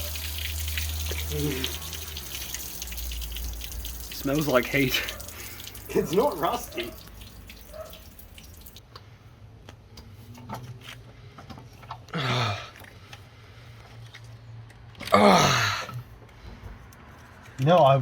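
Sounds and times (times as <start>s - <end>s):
oil dripping and trickling: 0.0s - 8.9s.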